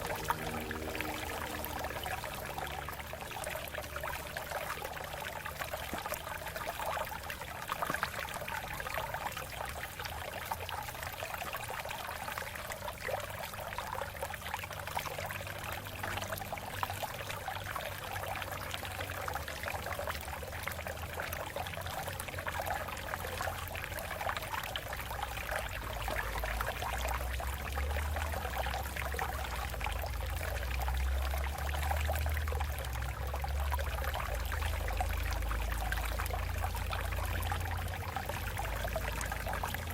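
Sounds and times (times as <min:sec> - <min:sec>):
low rumble: 0:00.0 - 0:04.3
stream water over rocks: 0:00.0 - 0:39.9.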